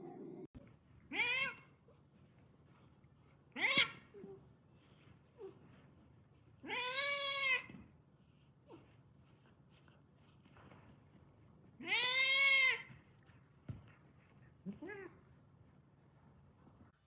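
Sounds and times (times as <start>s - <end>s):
cat meowing: 6.6s - 7.7s.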